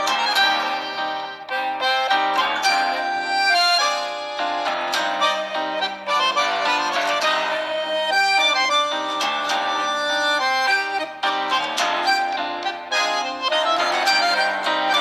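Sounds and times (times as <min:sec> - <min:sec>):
ringtone melody: 0:00.0 - 0:15.0.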